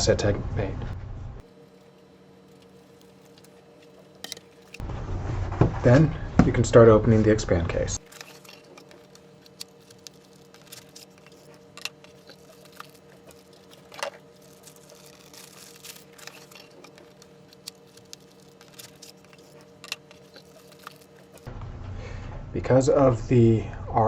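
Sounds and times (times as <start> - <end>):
faint steady hum: 0.0 - 24.0
tablet case and packaging handled: 1.6 - 4.8, 8.0 - 21.5.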